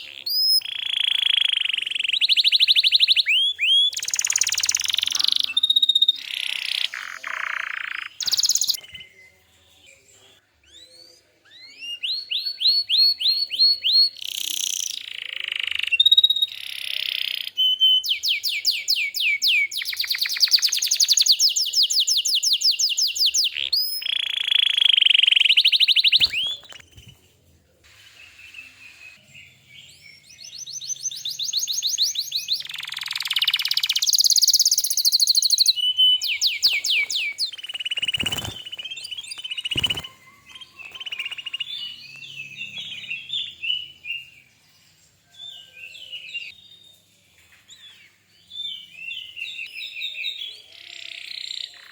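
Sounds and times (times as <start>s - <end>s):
canary singing trills: 0.0s - 9.5s, 10.6s - 27.2s, 28.2s - 46.6s.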